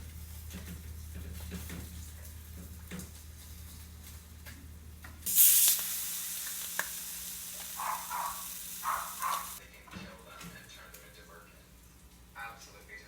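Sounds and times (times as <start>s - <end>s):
food sizzling in hot oil: 5.3s - 9.6s.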